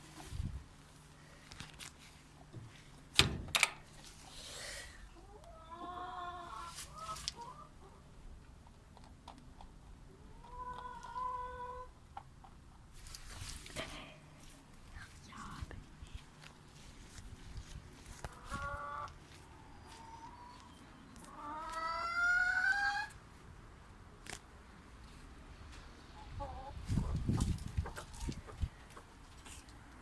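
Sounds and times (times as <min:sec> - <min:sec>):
chickens calling: 0:05.1 - 0:08.1, 0:10.1 - 0:12.0, 0:18.0 - 0:23.2, 0:26.1 - 0:29.2.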